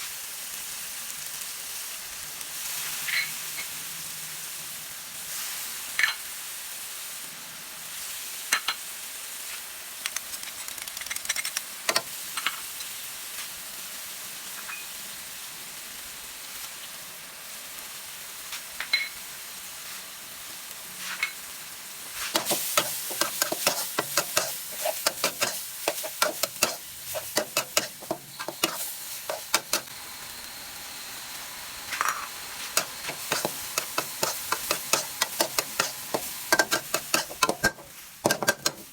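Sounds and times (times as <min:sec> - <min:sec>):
food sizzling in a hot pan: 0:00.0 - 0:10.5, 0:11.6 - 0:38.9
spatula scraping and clattering: 0:22.2 - 0:29.9, 0:31.9 - 0:38.9
spatula clinking on pan: 0:22.4 - 0:29.9, 0:32.8 - 0:38.9.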